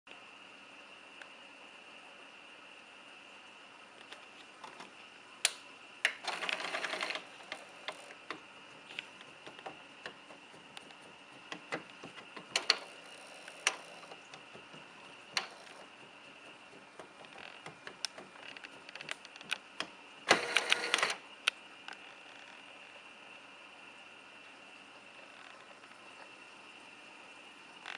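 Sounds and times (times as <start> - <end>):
printer knocking and clicking: 6.1 - 21.2
printer rapid clattering: 6.2 - 21.2.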